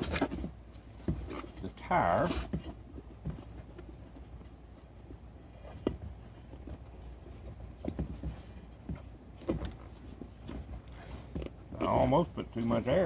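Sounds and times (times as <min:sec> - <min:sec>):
low steady hum: 0:00.0 - 0:13.0
rubber tube knocks and rubs: 0:05.6 - 0:12.0.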